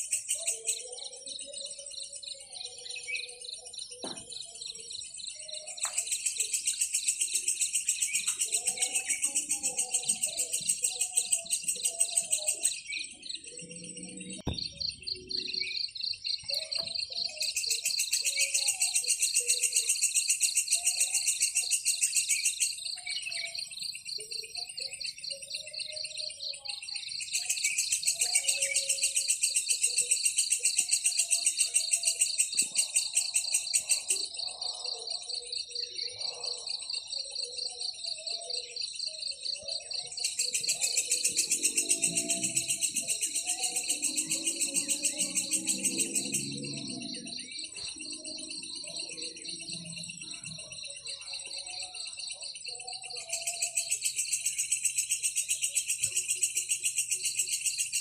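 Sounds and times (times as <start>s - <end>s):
bird chirps: 0.0s - 58.0s
insect trilling: 37.9s - 50.5s.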